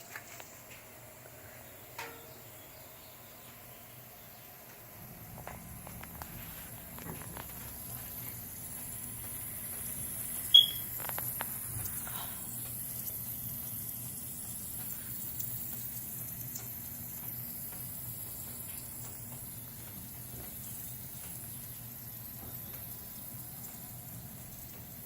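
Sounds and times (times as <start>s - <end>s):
water running: 5.3s - 25.0s
faint drips: 5.4s - 25.0s.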